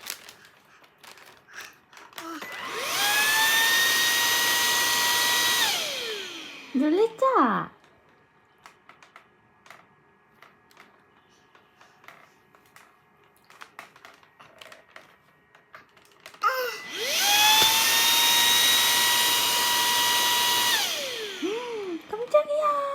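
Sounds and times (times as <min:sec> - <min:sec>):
vacuum cleaner motor whine: 0:02.2 - 0:07.5, 0:16.4 - 0:22.9.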